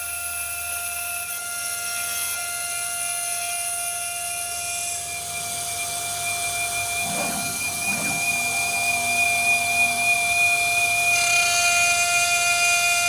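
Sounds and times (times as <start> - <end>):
machine spindle whining: 0.0 - 13.0
short rough machine sounds: 6.3 - 11.6.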